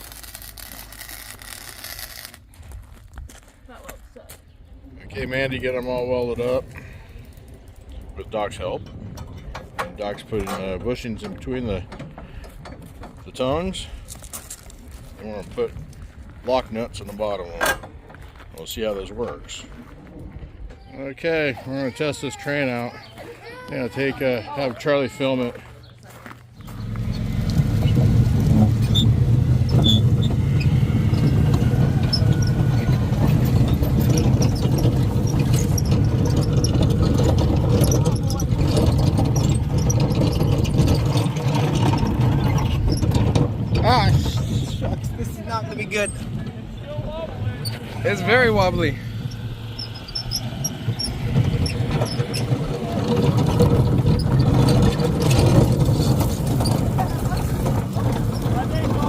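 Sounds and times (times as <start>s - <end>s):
lawn tractor engine running: 0.0s - 2.6s, 19.0s - 59.0s
carts clicking and rattling: 0.0s - 3.0s, 5.0s - 59.0s
towed cars clanking: 5.0s - 59.0s
faint hitch squeaks: 19.2s - 59.0s.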